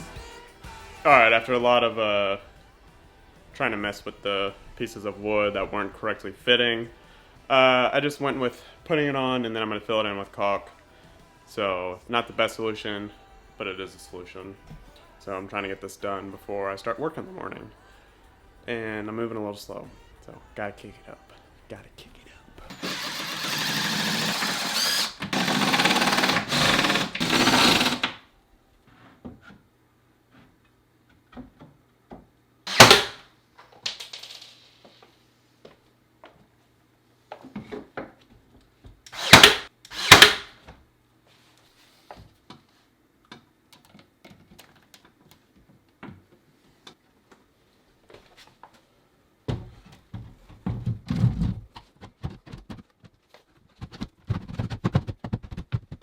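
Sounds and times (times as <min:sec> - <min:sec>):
power tool running in spurts: 0:22.7 - 0:28.1, 0:39.1 - 0:40.4.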